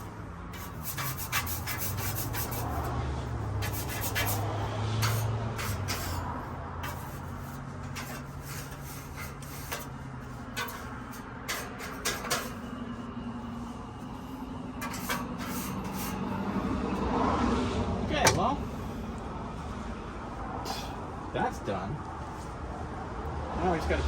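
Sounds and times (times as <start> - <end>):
hands clicking and tapping fan parts: 6.8 - 12.6.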